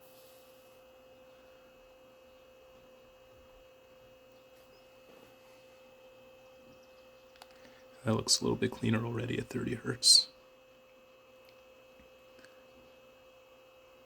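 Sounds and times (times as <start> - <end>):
faint electronic whine: 0.0 - 14.0.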